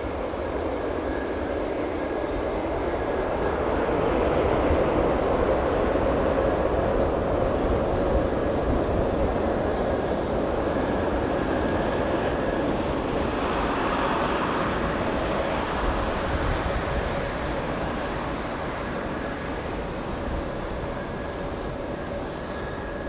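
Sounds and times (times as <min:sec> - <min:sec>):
jet engines rushing: 0:00.0 - 0:23.0.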